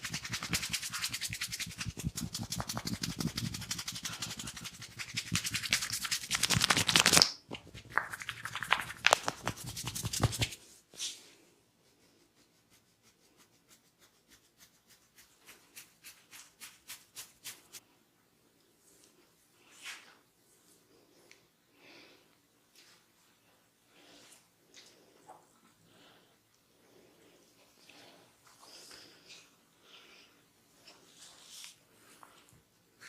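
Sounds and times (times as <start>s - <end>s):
hands rubbing and scratching skin: 0.0s - 11.1s, 12.4s - 17.8s.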